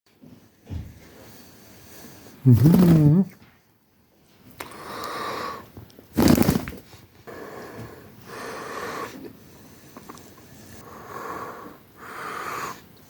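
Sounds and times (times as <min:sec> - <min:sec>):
parrot hoarse hissy noises: 0:10.8 - 0:12.9.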